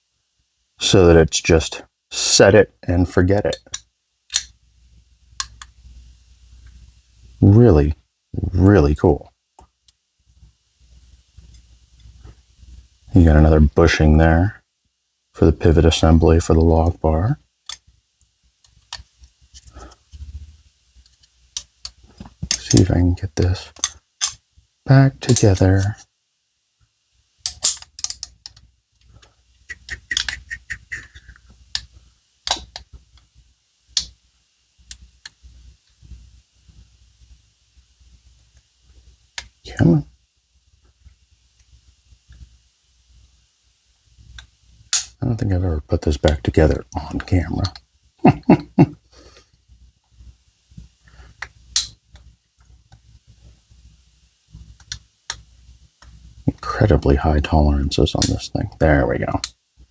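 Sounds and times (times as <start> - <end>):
steel knife parts clicking: 3.7 - 4.5, 30.2 - 30.4
knife parts clicking: 29.9 - 30.4.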